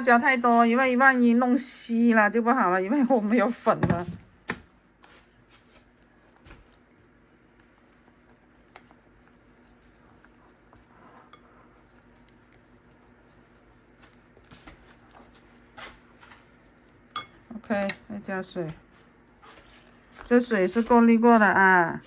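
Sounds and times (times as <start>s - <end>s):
utensil clinking against bowl: 17.1s - 18.1s.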